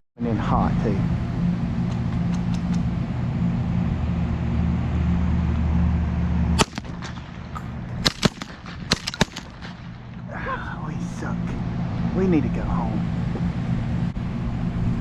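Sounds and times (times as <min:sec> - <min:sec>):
shotgun shot: 0:06.6 - 0:10.2.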